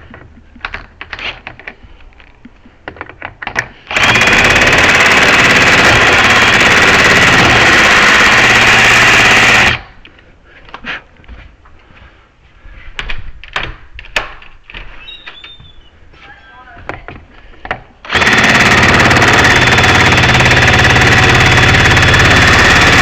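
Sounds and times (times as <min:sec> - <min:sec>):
clicks and knocks of handled part: 0:00.1 - 0:03.8
power grinder grinding metal: 0:03.9 - 0:09.8, 0:18.1 - 0:23.0.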